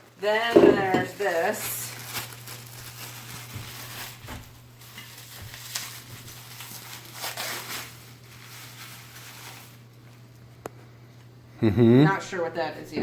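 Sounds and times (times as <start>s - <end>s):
packaging rustling: 0.7s - 10.2s.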